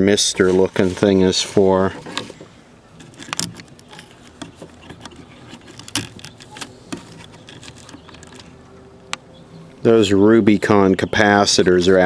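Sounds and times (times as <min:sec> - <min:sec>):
light clicks and rattles: 0:02.0 - 0:09.2.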